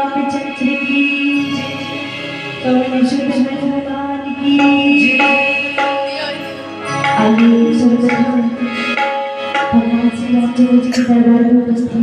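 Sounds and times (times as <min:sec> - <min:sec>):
electronic keyboard melody: 0:00.0 - 0:12.0
hand-drum rhythm: 0:04.3 - 0:11.6.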